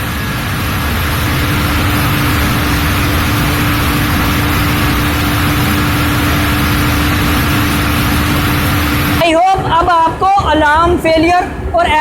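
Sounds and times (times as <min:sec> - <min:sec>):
chiller machinery humming: 0:00.0 - 0:09.3.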